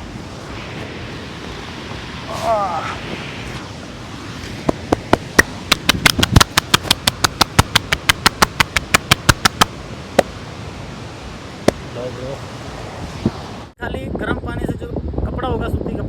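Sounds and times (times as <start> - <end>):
hands slapping in massage: 4.9 - 9.7.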